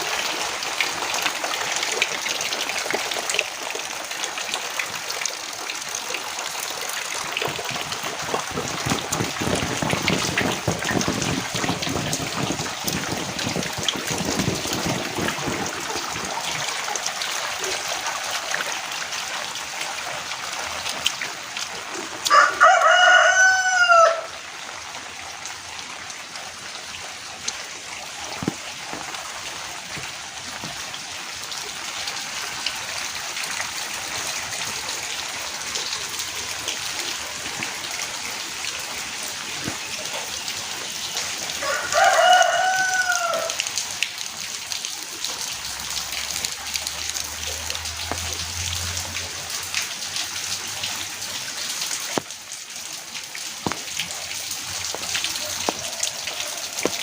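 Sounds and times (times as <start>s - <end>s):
heavy rain: 0.0s - 57.0s
rooster crowing: 22.2s - 24.4s, 41.6s - 43.6s.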